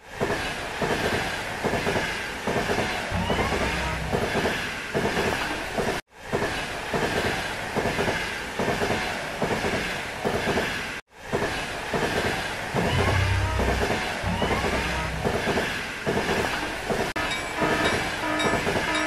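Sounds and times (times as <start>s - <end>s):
train wheels clicking on rails: 0.0s - 19.0s.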